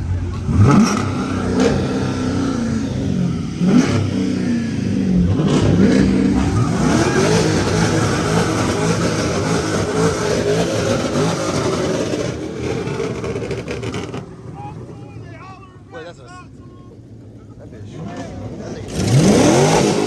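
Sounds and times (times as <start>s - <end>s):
car engine revving: 0.0s - 20.0s.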